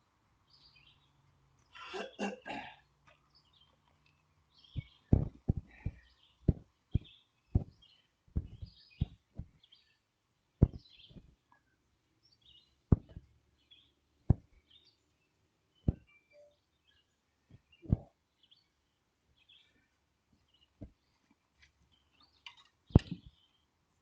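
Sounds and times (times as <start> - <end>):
small birds chirping: 0.3 - 24.0
dull knocks and thuds: 4.7 - 9.6, 10.6 - 11.3, 12.9 - 13.3, 14.3 - 14.5, 15.8 - 16.1, 22.9 - 23.4.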